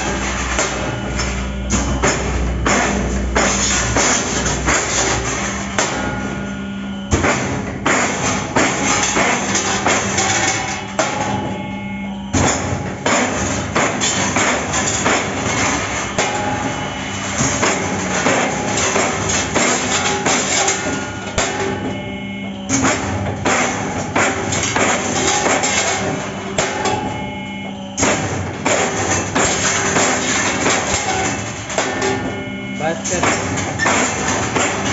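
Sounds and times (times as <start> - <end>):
music with drums: 0.0 - 34.9
drum hits: 1.6 - 5.0, 7.1 - 11.7, 12.3 - 20.6.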